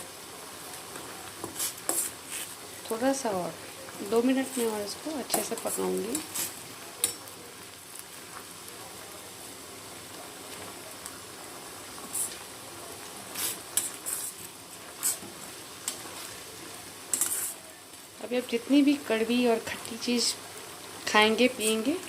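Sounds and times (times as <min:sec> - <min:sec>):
pot boiling with a hiss: 0:00.0 - 0:22.0
spoon scraping a pot: 0:01.4 - 0:02.5, 0:13.4 - 0:15.3, 0:17.1 - 0:17.6.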